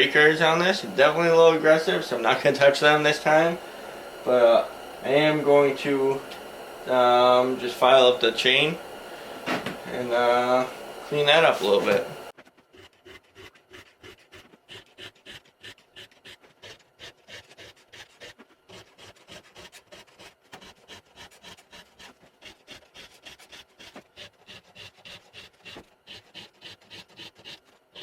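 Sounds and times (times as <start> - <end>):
hand file rasping on chain: 12.4 - 28.0.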